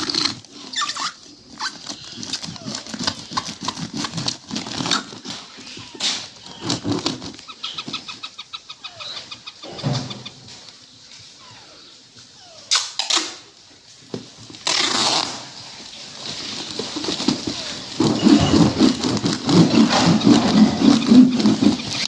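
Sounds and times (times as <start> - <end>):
packing tape ripping off roll: 0.0 - 7.5, 14.6 - 15.7, 16.4 - 22.0.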